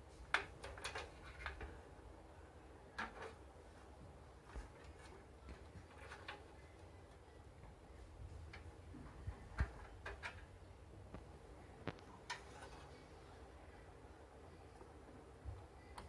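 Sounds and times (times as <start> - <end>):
computer parts clicking and knocking: 0.3 - 1.7, 9.5 - 10.5.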